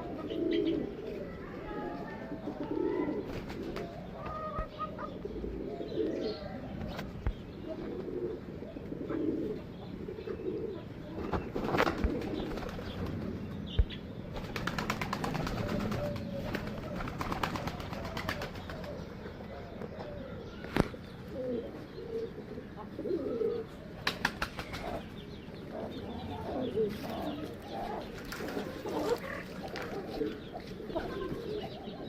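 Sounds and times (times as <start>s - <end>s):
pigeons cooing: 0.0s - 32.0s
wings flapping: 3.2s - 4.0s, 11.2s - 13.4s, 14.3s - 19.0s, 24.0s - 25.1s, 27.9s - 30.4s.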